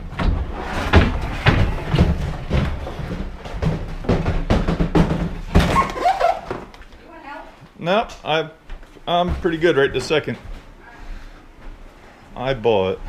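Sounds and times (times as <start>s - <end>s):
heavy footsteps on wood: 0.0s - 5.7s, 8.6s - 12.0s.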